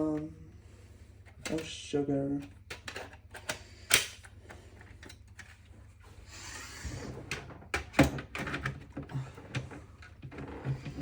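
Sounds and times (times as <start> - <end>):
plastic panel scraping: 6.7 - 11.0.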